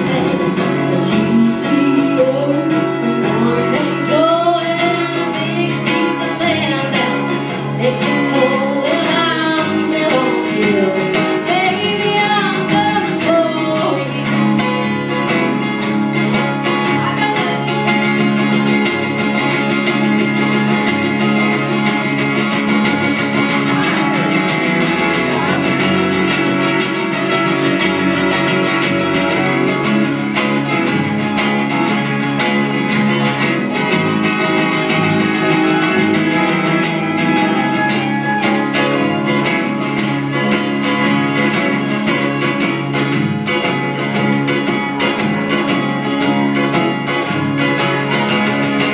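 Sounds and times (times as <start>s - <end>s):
woman singing: 0.0s - 14.9s, 16.8s - 18.6s, 22.6s - 25.9s
country music on guitar and fiddle: 0.0s - 48.9s.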